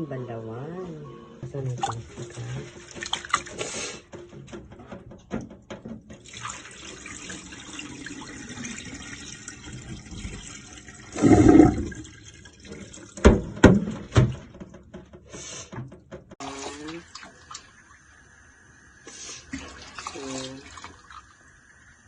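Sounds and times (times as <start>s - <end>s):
water pouring: 6.2s - 13.2s.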